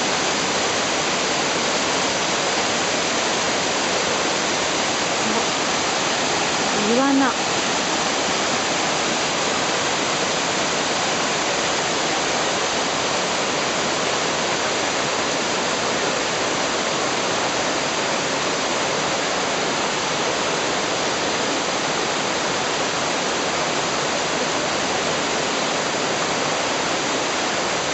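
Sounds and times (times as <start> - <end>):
waterfall rushing over rock: 0.0 - 27.9.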